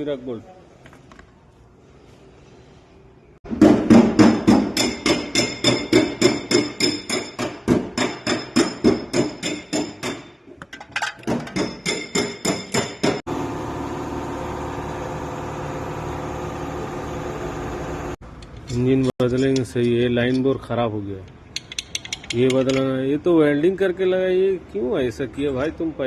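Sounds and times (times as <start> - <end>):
hammer striking metal: 3.6 - 10.5, 11.2 - 13.3
steady mechanical hum: 13.0 - 20.5.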